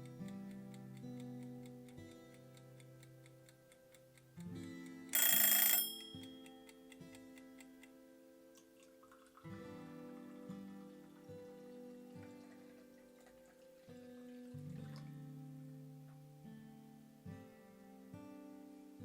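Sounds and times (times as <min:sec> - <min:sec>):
faint ticking beat: 0:00.0 - 0:13.8
soft instrumental music: 0:05.9 - 0:19.0.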